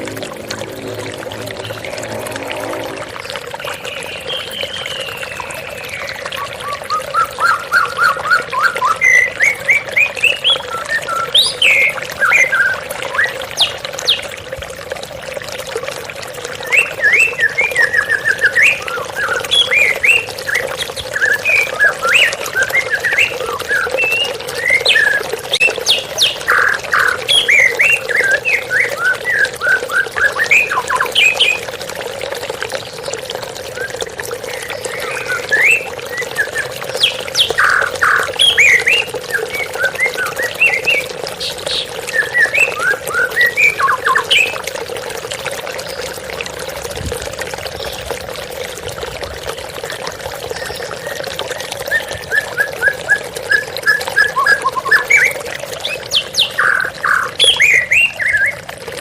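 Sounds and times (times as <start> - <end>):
waterfall rushing: 0.0 - 4.5
bird singing whistled notes: 34.6 - 41.0.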